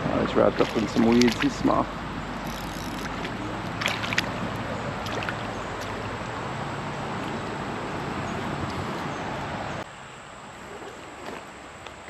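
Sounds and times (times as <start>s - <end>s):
creek water rushing: 0.0s - 9.8s
sharp clicks or splashes: 0.6s - 1.8s, 2.4s - 6.2s.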